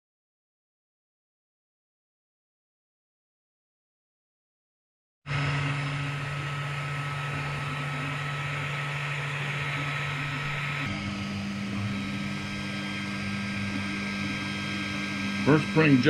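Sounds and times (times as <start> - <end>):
faint whine: 5.3 - 16.0
printer mechanical hum: 5.3 - 16.0.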